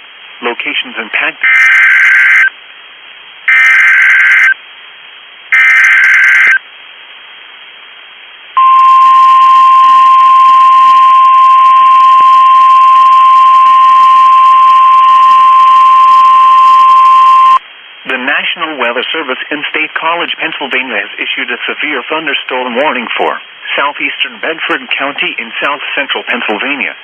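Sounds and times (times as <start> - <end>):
digital data tone bursts: 1.4 - 2.5, 3.5 - 4.6, 5.5 - 6.6, 8.6 - 17.6
steady warning alarm tone: 1.4 - 2.5, 3.5 - 4.6, 5.6 - 6.6, 8.6 - 17.6.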